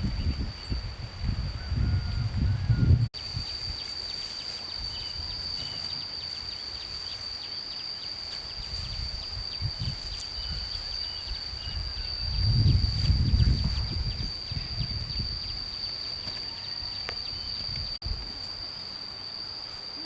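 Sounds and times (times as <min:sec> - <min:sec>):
high-pitched insect drone: 0:00.0 - 0:20.0.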